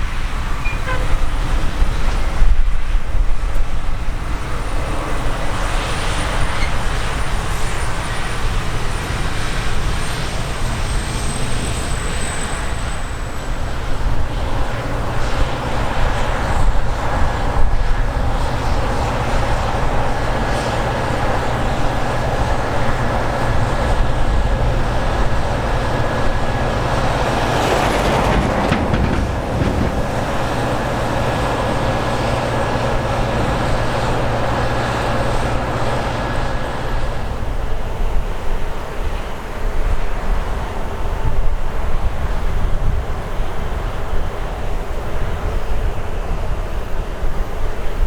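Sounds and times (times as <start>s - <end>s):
deep engine rumble: 9.8s - 38.1s.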